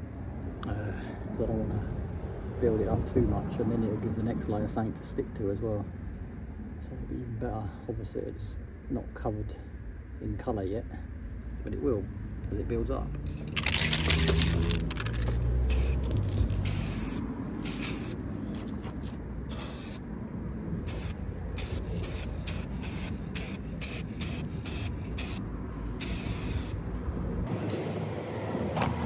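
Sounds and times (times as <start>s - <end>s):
aerosol spray can hissing: 13.3s - 20.0s, 20.9s - 26.8s, 27.7s - 28.0s.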